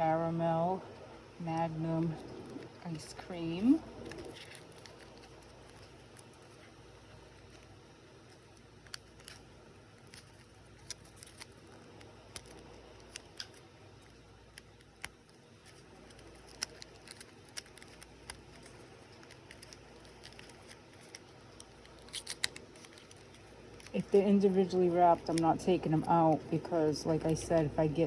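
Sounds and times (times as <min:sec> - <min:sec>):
low steady hum: 0:00.0 - 0:28.0
small plastic pieces clicking: 0:10.0 - 0:24.0.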